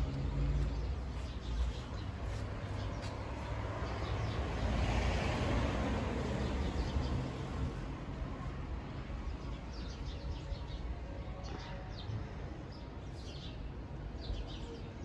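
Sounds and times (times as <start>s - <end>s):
vehicle passing: 0.0s - 8.2s.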